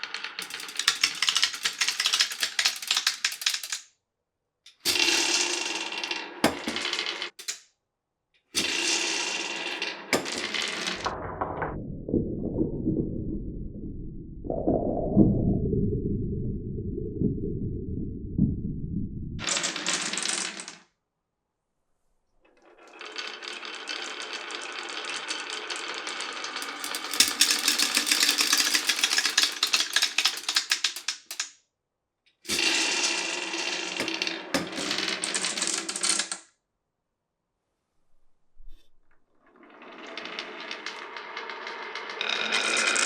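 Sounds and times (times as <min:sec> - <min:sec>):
marbles rolling on wooden run: 0:00.0 - 0:03.8, 0:04.9 - 0:07.6, 0:08.6 - 0:11.8, 0:19.4 - 0:20.9, 0:22.6 - 0:31.5, 0:32.5 - 0:36.4, 0:39.5 - 0:43.0
fast run of clicks: 0:00.4 - 0:03.8, 0:26.6 - 0:31.5
muffled low rumble: 0:11.1 - 0:19.4.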